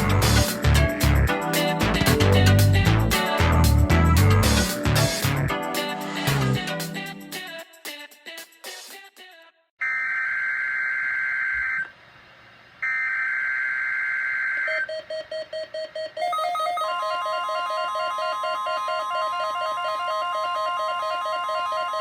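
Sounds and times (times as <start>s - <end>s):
guitar music: 0.0s - 7.2s
alternating electronic alert beeps: 12.8s - 22.0s.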